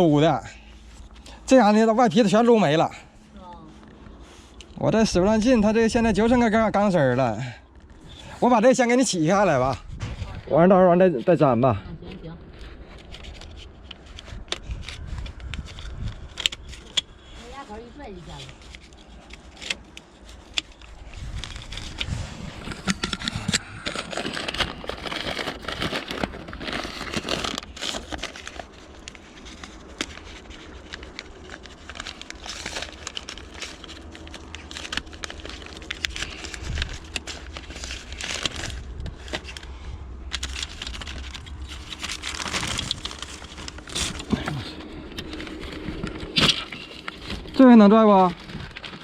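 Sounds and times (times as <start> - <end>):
cable crinkling and rustling: 11.0 - 49.0.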